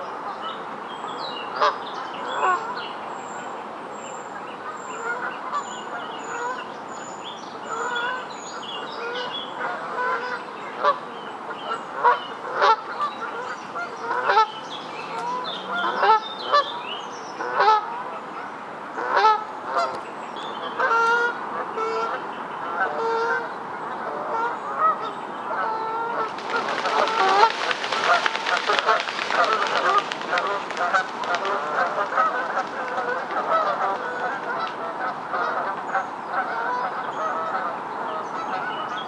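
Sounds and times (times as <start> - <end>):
geese honking: 25.8 - 36.9.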